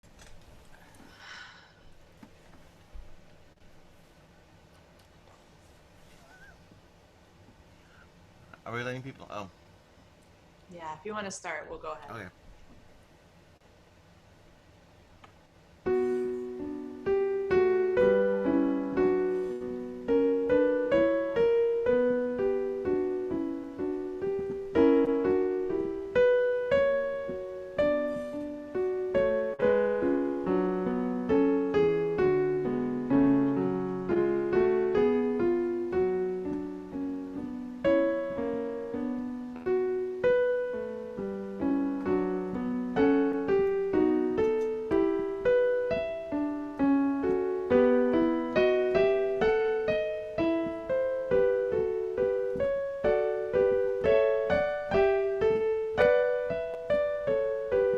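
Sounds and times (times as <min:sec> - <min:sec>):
slow melodic piano piece: 0:15.8 - 0:57.9.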